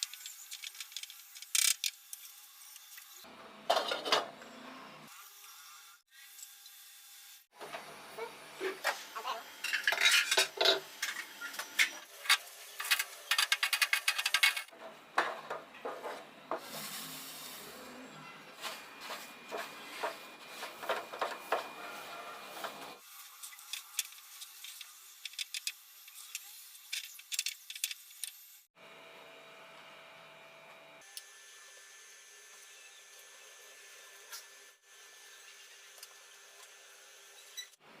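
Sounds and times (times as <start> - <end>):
metal spoon scraping a pan: 9.6 - 14.7.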